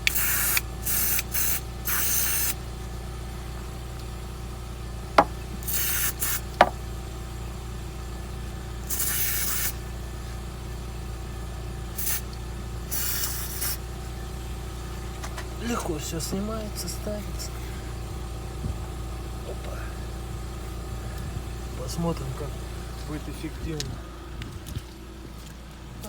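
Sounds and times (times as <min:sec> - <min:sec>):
aerosol spray hissing: 0:00.0 - 0:02.6, 0:05.6 - 0:06.8, 0:08.9 - 0:09.8, 0:12.0 - 0:12.3, 0:12.9 - 0:13.8
steady low hum: 0:00.0 - 0:26.0.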